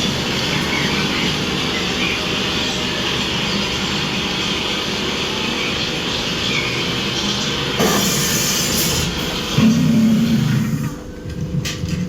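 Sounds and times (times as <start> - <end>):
ride train car rumble and hiss: 0.0 - 11.3.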